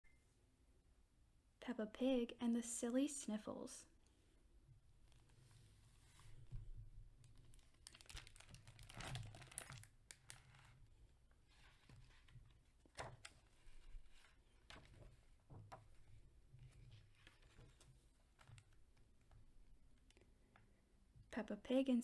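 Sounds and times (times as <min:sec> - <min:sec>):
paper pages rustling: 0:07.2 - 0:10.8, 0:11.4 - 0:19.3.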